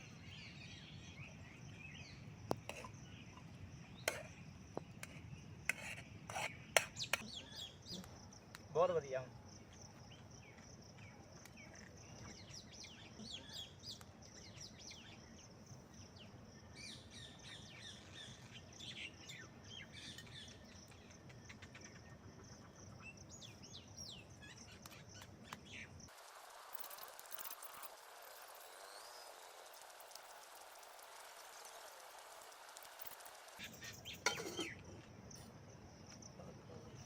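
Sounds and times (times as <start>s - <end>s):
even hiss: 26.1s - 34.7s.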